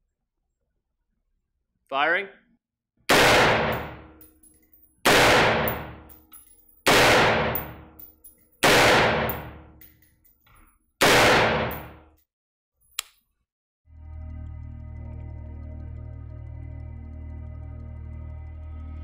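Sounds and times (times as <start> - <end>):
rifle shots echoing: 3.1 - 4.2, 5.0 - 6.2, 6.9 - 8.0, 8.6 - 9.8, 11.0 - 12.0
short click: 13.0 - 13.2
soft ambient music: 13.9 - 19.0.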